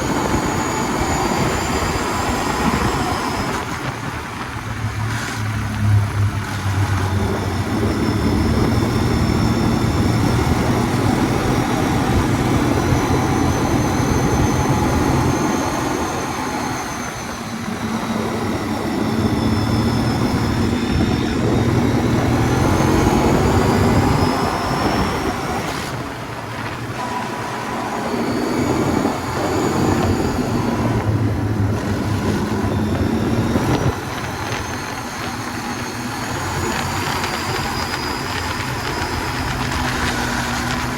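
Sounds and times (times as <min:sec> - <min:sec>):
atv engine revving: 0:00.0 - 0:40.9
high whine: 0:00.0 - 0:40.9.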